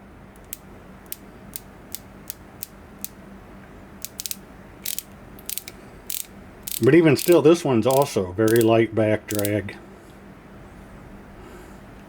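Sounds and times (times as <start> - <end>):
screwdriver ratchet clicking: 0.4 - 3.2, 4.0 - 8.7, 9.3 - 9.6.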